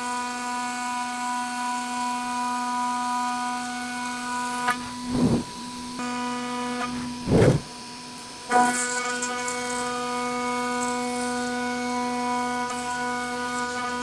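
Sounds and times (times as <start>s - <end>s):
short low rush: 4.8s - 5.9s, 7.0s - 7.7s.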